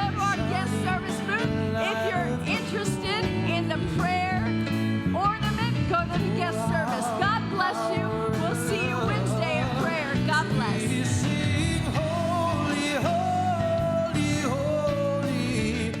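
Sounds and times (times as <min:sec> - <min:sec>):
band accompaniment: 0:00.0 - 0:16.0
person singing worship song: 0:06.2 - 0:16.0.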